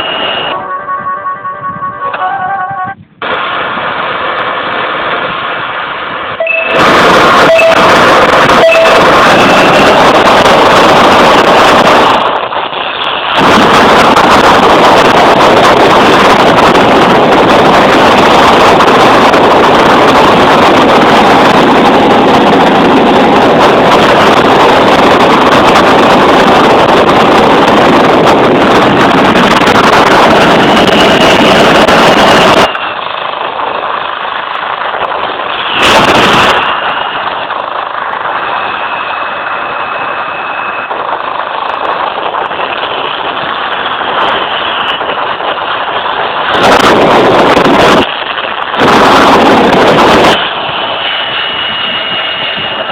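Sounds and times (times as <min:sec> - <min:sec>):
faint high whine: 0:00.0 - 0:03.9, 0:06.2 - 0:14.3, 0:28.6 - 0:33.4, 0:38.2 - 0:41.8, 0:47.8 - 0:52.9
loud jet engine noise: 0:00.0 - 0:52.9.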